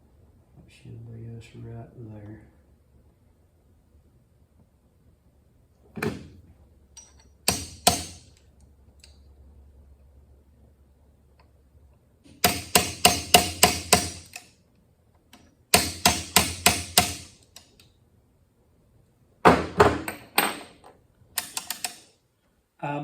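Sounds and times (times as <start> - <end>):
hammer tapping on steel: 12.4 - 14.5.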